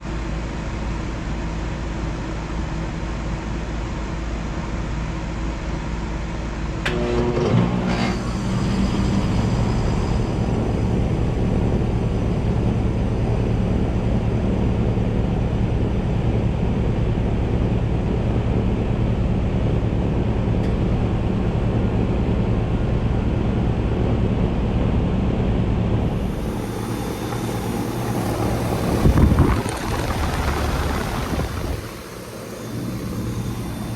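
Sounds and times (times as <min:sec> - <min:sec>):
compressor and fan whine: 0:00.0 - 0:33.9
heat pump unit humming: 0:06.7 - 0:15.4, 0:16.1 - 0:33.9.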